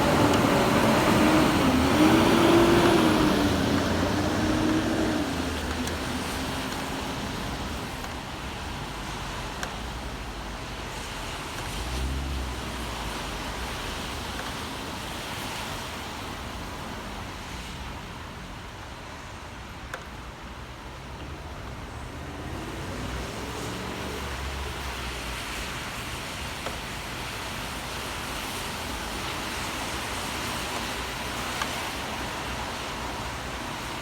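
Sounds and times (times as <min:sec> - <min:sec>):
vehicle passing: 0:00.0 - 0:07.8, 0:22.0 - 0:25.6
vehicle low rumble: 0:00.0 - 0:15.1
wet road hiss: 0:00.0 - 0:19.6, 0:21.7 - 0:34.0.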